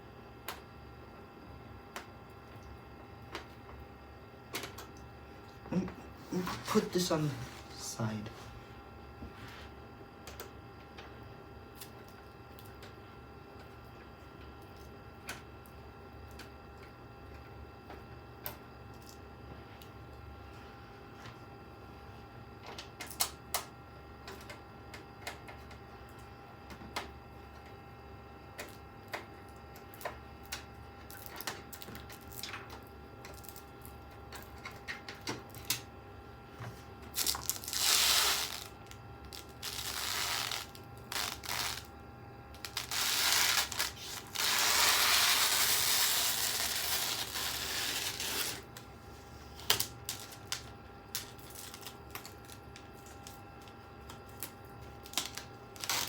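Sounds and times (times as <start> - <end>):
plastic wrapping tearing: 37.1 - 41.9, 42.6 - 48.7, 49.6 - 53.4, 54.3 - 56.0.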